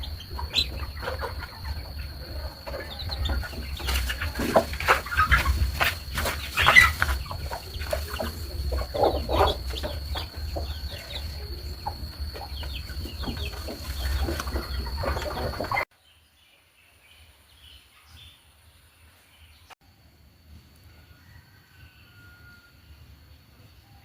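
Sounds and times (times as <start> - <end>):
chickens clucking: 0.0 - 15.9.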